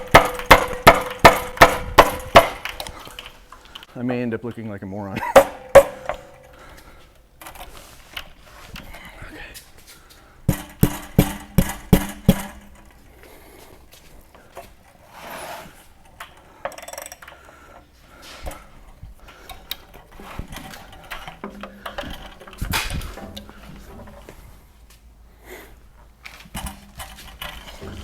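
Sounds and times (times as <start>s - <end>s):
metal-on-metal strikes: 0.0s - 2.7s, 5.2s - 6.5s, 10.5s - 12.9s
quiet knocks and clatters: 19.3s - 25.1s, 26.3s - 28.0s.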